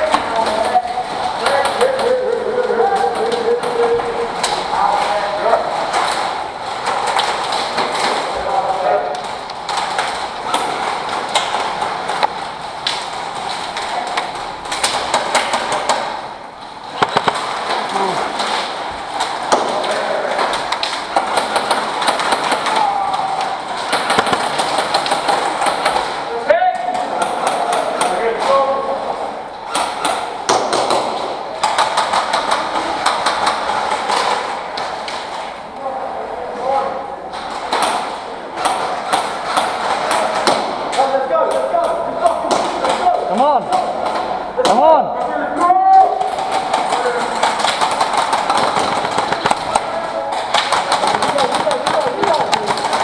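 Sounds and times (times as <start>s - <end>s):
indistinct voices: 0.0s - 30.5s, 31.1s - 53.0s
steady background noise: 0.0s - 53.0s
sharp clicks and knocks: 9.1s - 16.2s, 16.9s - 26.3s, 46.2s - 53.0s
airsoft guns firing: 16.9s - 26.3s, 46.2s - 53.0s.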